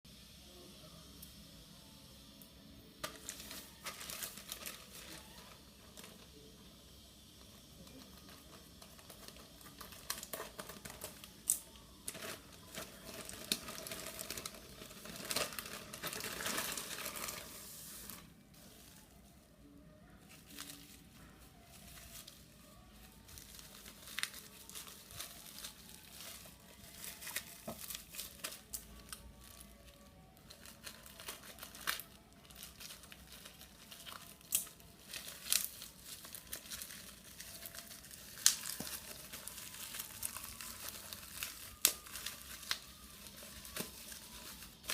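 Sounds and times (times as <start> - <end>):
packaging crinkling and tearing: 3.0 - 6.4, 7.8 - 19.0, 20.3 - 44.9
sharp crackles and clicks: 30.5 - 44.9.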